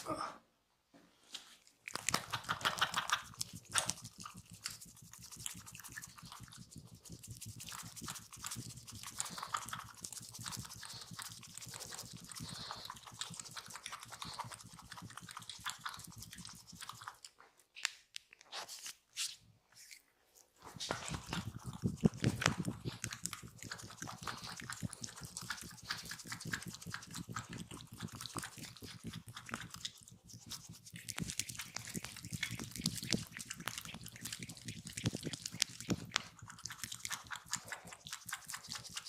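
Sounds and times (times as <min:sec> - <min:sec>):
hands rubbing skin: 0:01.3 - 0:39.0.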